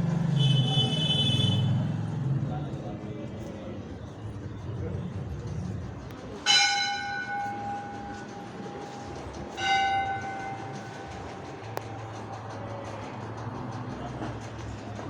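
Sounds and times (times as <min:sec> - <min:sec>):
temple bell ringing: 0:06.4 - 0:11.5.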